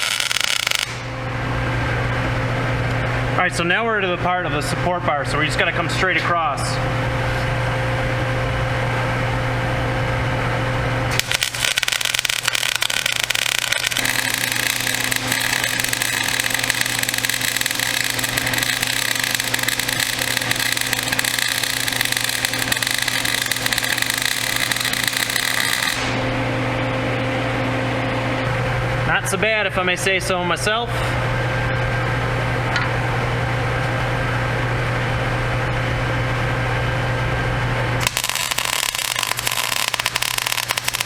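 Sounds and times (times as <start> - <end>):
arc welding crackle and sizzle: 0.0 - 2.1, 9.6 - 28.6, 38.0 - 41.0
low steady hum: 0.0 - 41.0.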